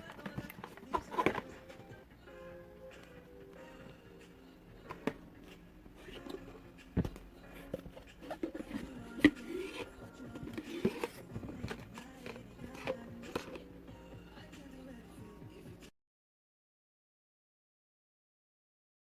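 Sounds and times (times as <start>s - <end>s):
packaging handling taps and scrapes: 0.0s - 2.0s, 4.8s - 13.7s.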